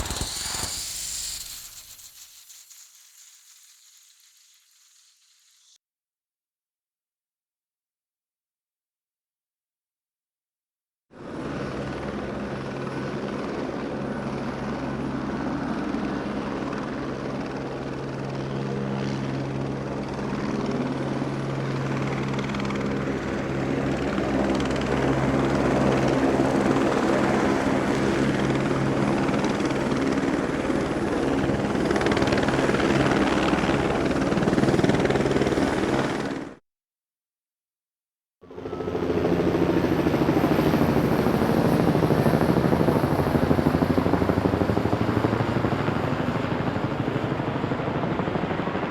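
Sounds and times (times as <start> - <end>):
helicopter rotor and turbine: 0.0 - 5.8, 11.2 - 36.6, 38.4 - 48.9.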